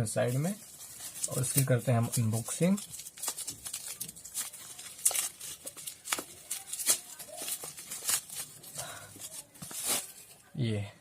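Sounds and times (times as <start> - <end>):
packaging crackling: 0.4 - 10.4.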